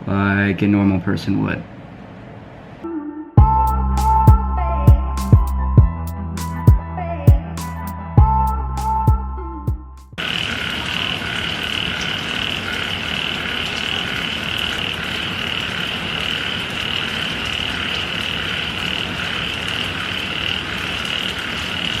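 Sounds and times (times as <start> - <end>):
chorus of frogs calling: 10.2 - 22.0.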